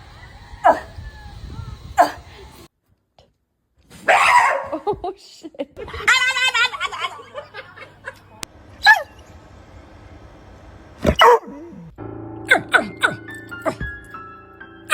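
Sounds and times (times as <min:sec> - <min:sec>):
dog whining: 0:00.6 - 0:00.9, 0:08.8 - 0:09.2, 0:11.0 - 0:13.9
dog barking: 0:00.6 - 0:01.0, 0:02.0 - 0:02.2, 0:04.0 - 0:04.8, 0:08.8 - 0:09.2, 0:11.0 - 0:11.7, 0:12.5 - 0:13.8
dog yelping: 0:00.6 - 0:01.0, 0:02.0 - 0:02.2, 0:04.1 - 0:04.8, 0:08.8 - 0:09.2, 0:11.0 - 0:11.9, 0:12.5 - 0:13.8
music: 0:12.0 - 0:14.9.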